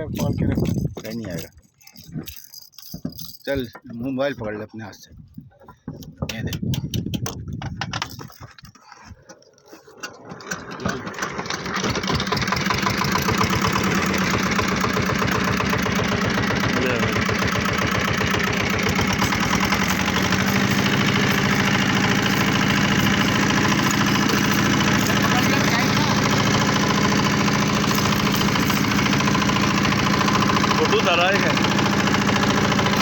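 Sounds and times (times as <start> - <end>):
small engine starting and idling: 7.7 - 33.0.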